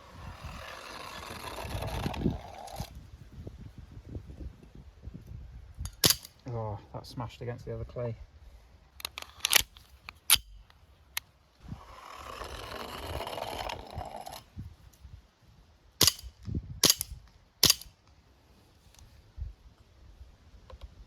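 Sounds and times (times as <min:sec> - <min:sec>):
clay pigeon rolling: 0:00.0 - 0:03.0, 0:11.6 - 0:14.6.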